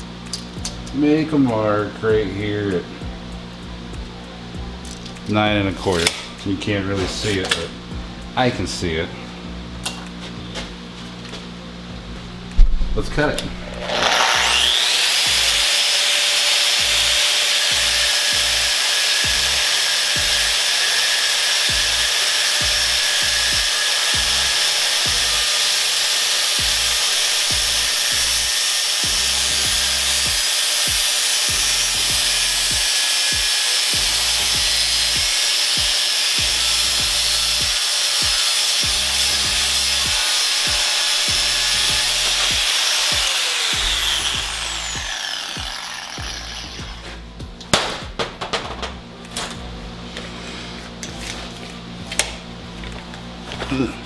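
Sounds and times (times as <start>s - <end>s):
power tool cutting steel pipe: 13.2s - 47.2s.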